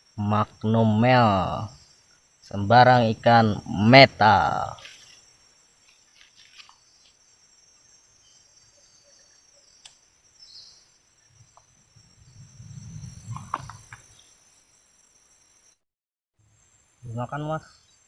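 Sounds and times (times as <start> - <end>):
insects chirring: 0.0 - 15.8, 16.4 - 18.0
low rumble: 11.8 - 13.9.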